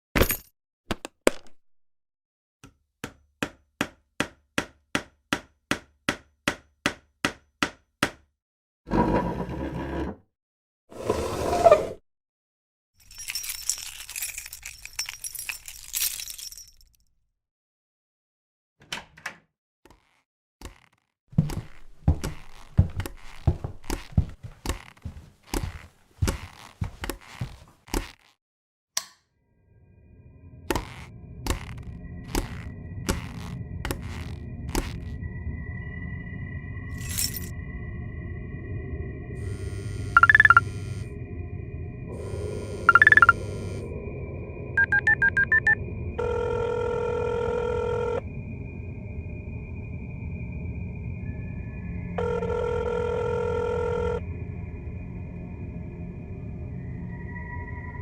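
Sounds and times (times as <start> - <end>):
rough scraping noise: 8.9 - 10.2.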